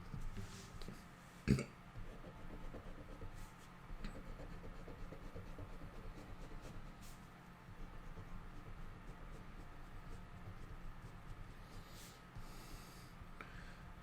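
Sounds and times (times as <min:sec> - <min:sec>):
low steady hum: 0:00.0 - 0:14.0
pen scratching on paper: 0:02.0 - 0:12.8.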